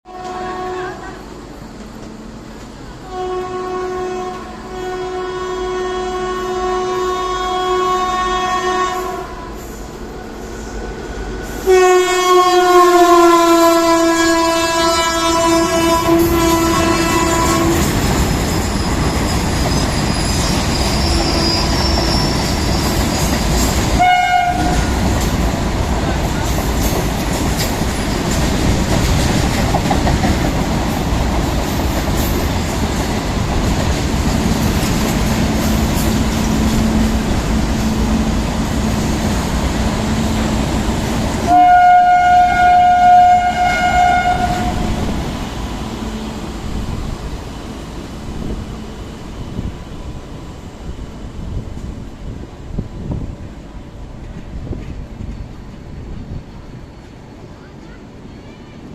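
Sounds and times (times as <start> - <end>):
train wheels rumbling on track: 0.0 - 58.9
locomotive horn: 0.1 - 1.2, 3.0 - 9.7, 11.6 - 18.1, 24.0 - 25.0, 41.4 - 45.1.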